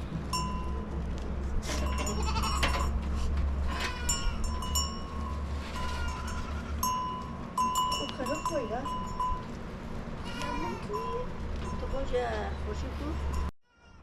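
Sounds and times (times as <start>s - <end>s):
steady low rumble: 0.0s - 13.5s
goats bleating: 1.9s - 2.8s, 10.2s - 11.0s
light ringing: 3.7s - 9.6s.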